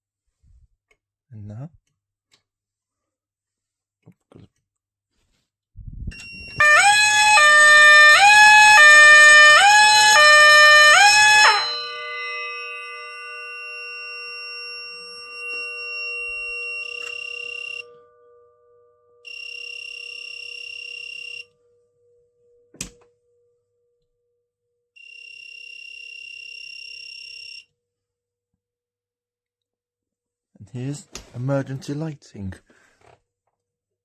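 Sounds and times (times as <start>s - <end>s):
fire alarm buzzer: 6.1s - 18.1s, 19.2s - 21.6s, 25.0s - 27.8s
two-tone alarm warble: 6.1s - 21.8s, 25.0s - 27.7s.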